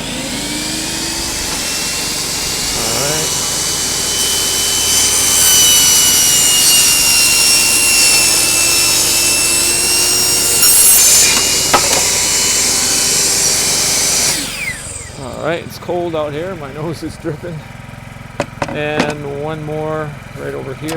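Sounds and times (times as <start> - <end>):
table saw ripping wood: 0.0 - 15.4.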